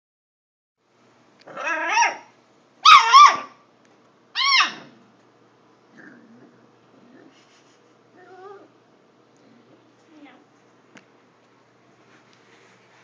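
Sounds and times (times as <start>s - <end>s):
puppy crying: 1.5s - 3.6s, 4.4s - 5.0s.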